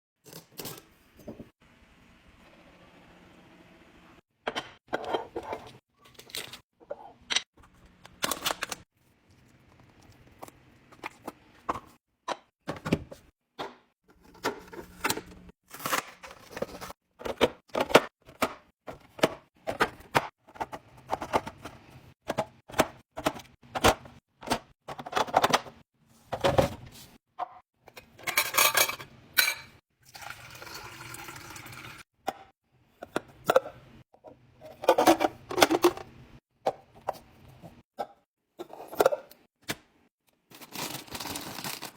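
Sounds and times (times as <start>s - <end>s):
jars and bottles clinking: 28.2s - 31.9s.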